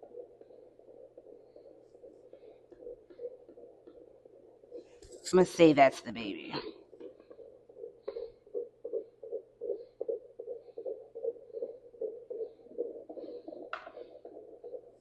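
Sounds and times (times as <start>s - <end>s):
fetal heartbeat whooshing pulse: 0.0s - 5.5s, 6.5s - 15.0s.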